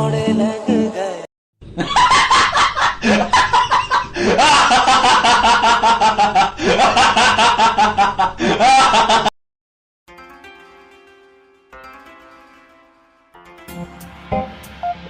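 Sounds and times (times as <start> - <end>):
high-pitched cackling laugh: 1.7 - 9.3.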